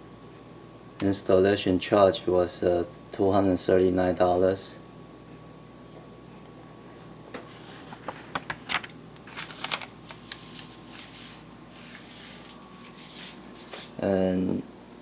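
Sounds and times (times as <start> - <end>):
soft rustles: 9.3 - 14.0.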